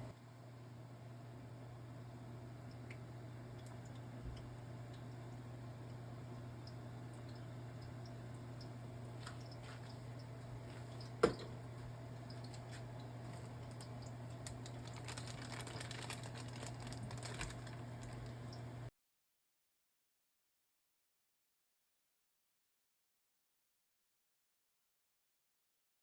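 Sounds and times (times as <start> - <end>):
steady low hum: 0.0 - 18.9.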